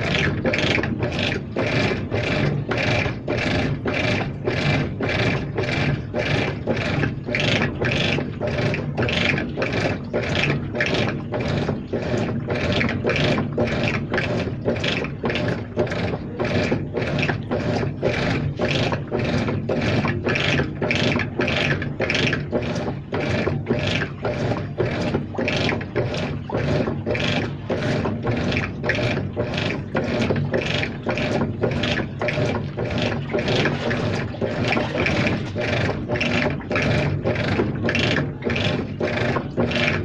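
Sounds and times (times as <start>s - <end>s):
washing machine swishing: 0.0s - 40.0s.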